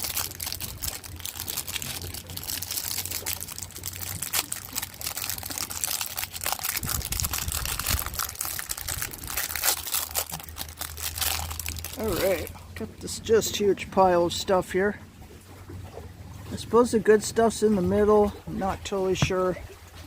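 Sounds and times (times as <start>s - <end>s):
cellophane wrapper crinkling: 0.0s - 12.5s
wind rumble on microphone: 4.2s - 10.0s.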